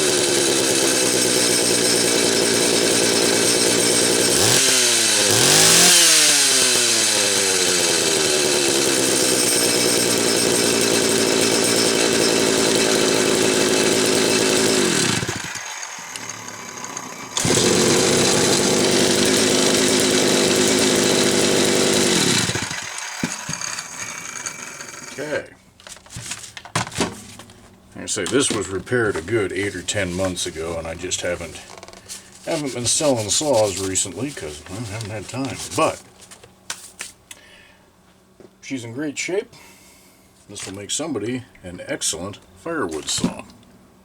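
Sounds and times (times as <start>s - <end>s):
chainsaw engine running: 0.0s - 25.5s, 28.4s - 36.0s.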